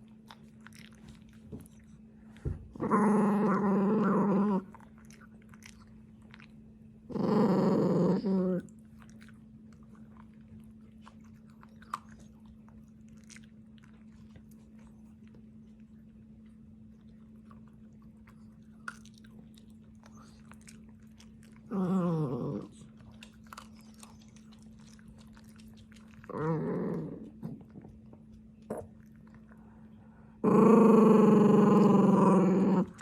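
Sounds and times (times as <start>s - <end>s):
dog chewing crunches: 0.0s - 7.0s, 8.2s - 29.8s
dog growling: 2.7s - 5.8s, 7.1s - 9.3s, 20.1s - 28.1s, 30.4s - 33.0s.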